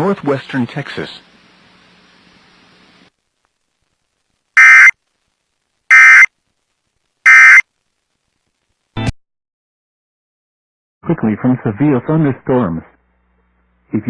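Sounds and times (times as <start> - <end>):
digital data tone bursts: 4.6 - 4.9, 5.9 - 6.3, 7.3 - 7.6.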